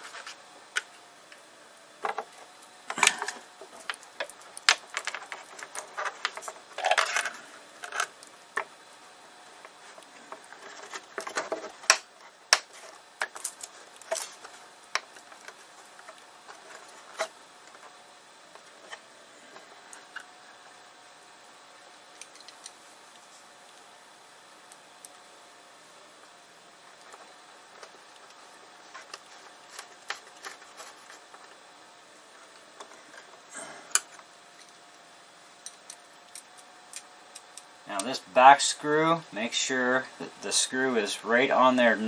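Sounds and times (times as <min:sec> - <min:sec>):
small hard parts clicking and clattering: 0:02.9 - 0:08.7, 0:09.6 - 0:17.9.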